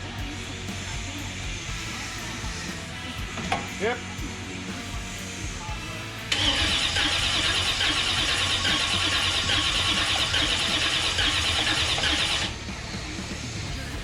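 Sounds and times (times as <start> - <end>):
starter motor cranking engine: 6.3 - 12.6.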